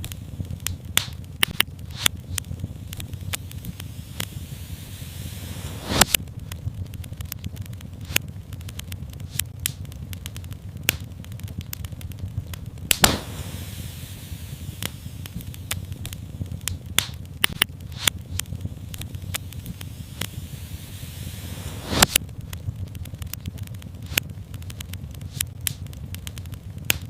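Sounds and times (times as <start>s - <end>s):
fire crackling: 0.0s - 27.0s
brief hiss: 3.8s - 6.2s, 12.9s - 15.8s, 19.4s - 22.2s.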